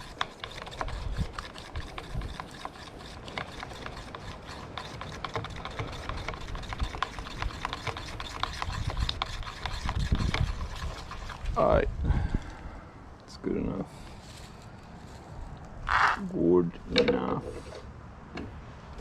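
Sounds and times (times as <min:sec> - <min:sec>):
stick scraping inside container: 0:00.0 - 0:11.8, 0:16.9 - 0:17.9.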